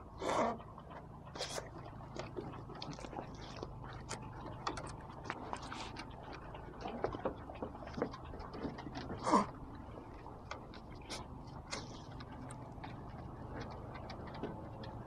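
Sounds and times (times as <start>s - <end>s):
faint ticks and clicks: 0.0s - 15.0s.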